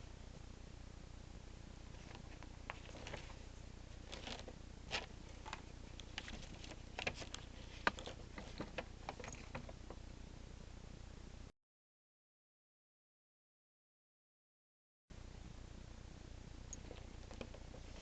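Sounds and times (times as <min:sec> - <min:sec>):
low steady hum: 0:00.0 - 0:11.5, 0:15.1 - 0:18.0.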